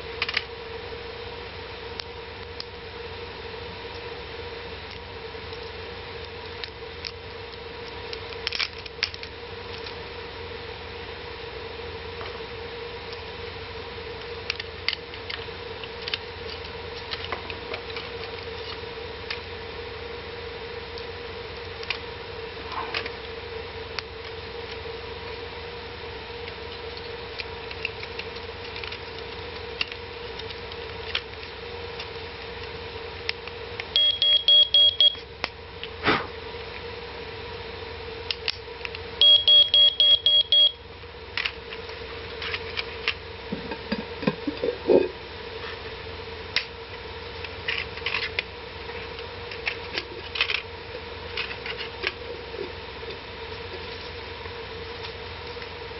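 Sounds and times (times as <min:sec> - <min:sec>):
smoke detector beeping: 0:33.9 - 0:35.2, 0:39.2 - 0:40.8.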